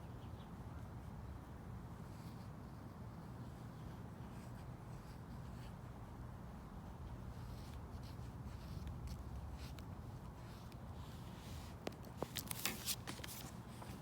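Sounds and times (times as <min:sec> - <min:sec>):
low outdoor background rumble: 0:00.0 - 0:14.0
pen scratching on paper: 0:02.0 - 0:06.2.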